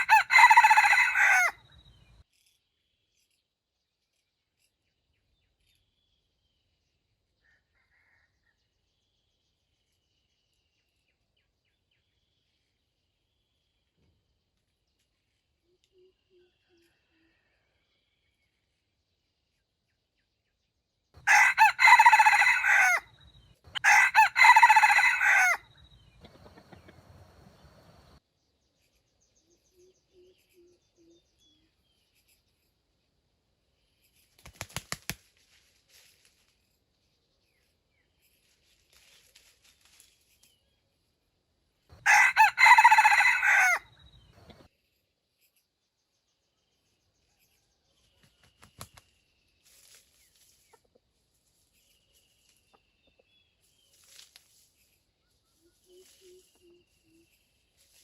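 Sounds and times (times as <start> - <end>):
rooster crowing: 0.0 - 1.6, 21.2 - 23.1, 23.8 - 25.7, 42.0 - 43.9.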